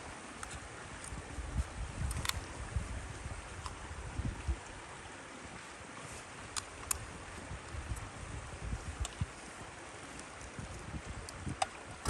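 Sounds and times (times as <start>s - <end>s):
campfire burning with hiss: 0.0s - 12.0s
wind buffeting microphone: 0.8s - 4.9s, 6.9s - 9.8s, 10.4s - 12.0s.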